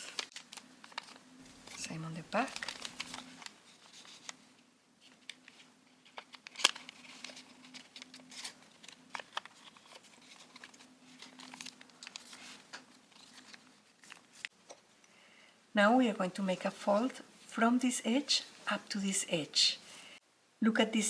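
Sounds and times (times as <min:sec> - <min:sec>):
paper crinkling and crackling: 0:00.0 - 0:04.4, 0:05.0 - 0:14.6.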